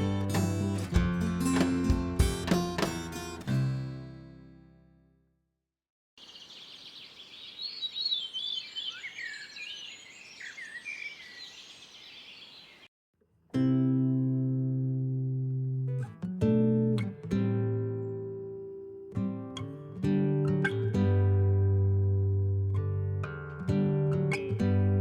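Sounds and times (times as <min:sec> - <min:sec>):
plucked guitar music: 0:00.0 - 0:05.0, 0:13.3 - 0:25.0
birds twittering: 0:06.2 - 0:12.9.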